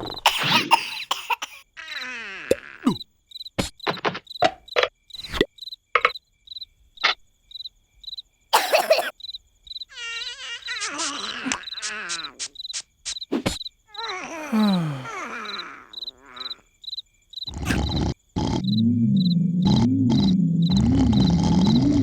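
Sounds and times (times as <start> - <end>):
cricket chirping: 0.0 - 22.0
cartoon character vocalizing: 1.7 - 3.0, 9.9 - 12.6, 13.9 - 16.6, 17.5 - 22.0.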